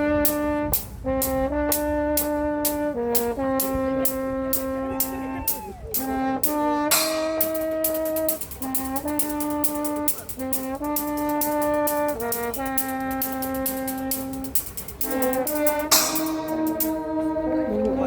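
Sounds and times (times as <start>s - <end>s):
steady drum beat: 0.0s - 17.4s
trombones playing: 0.0s - 18.0s.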